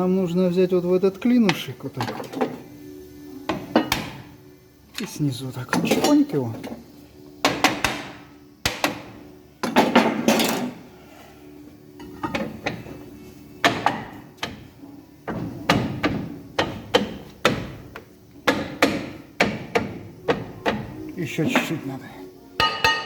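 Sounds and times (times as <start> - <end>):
hammer striking steel: 22.6 - 23.0.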